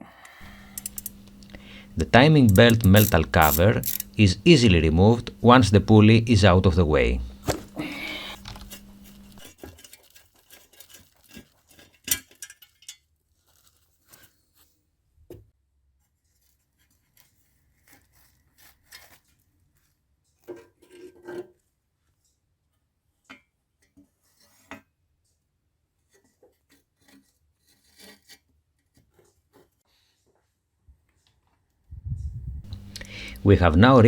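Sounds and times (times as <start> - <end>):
metal tools clinking: 0.4 - 4.4.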